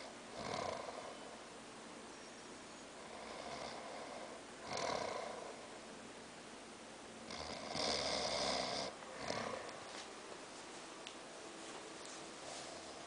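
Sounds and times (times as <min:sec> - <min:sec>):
man snoring: 0:00.0 - 0:01.2, 0:03.0 - 0:05.6, 0:07.3 - 0:09.7.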